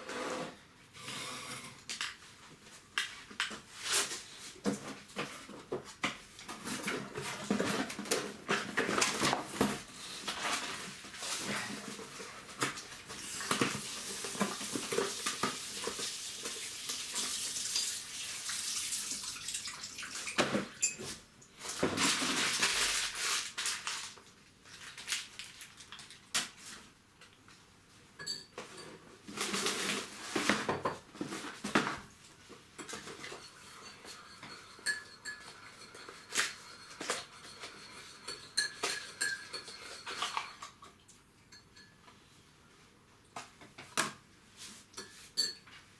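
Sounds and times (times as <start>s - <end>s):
water running from a tap: 13.2s - 20.4s
dishes and cutlery clinking: 28.2s - 32.0s, 32.8s - 40.9s, 41.5s - 42.2s, 44.9s - 45.9s.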